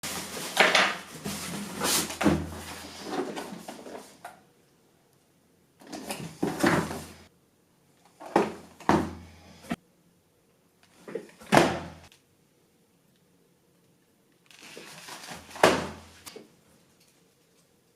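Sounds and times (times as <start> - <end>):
rustling and scraping: 0.0 - 4.3.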